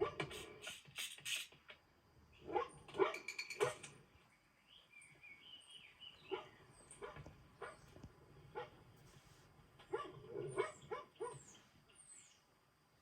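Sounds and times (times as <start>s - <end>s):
dog barking: 2.5s - 3.3s, 6.3s - 8.8s, 9.9s - 11.6s.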